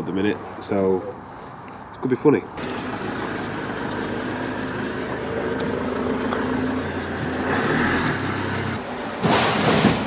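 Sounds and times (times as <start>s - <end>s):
van engine running: 2.6s - 9.0s.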